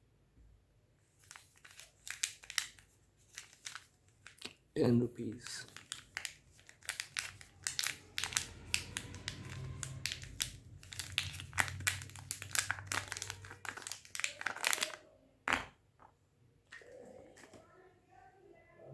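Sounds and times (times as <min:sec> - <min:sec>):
packaging wrapper crinkling: 0:01.2 - 0:04.6, 0:05.4 - 0:15.7.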